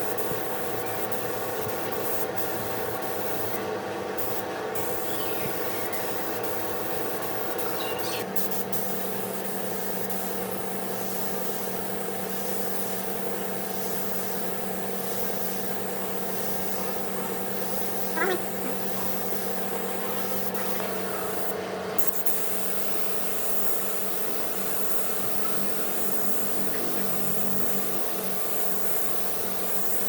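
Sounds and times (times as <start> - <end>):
short squeak: 7.7 - 8.3.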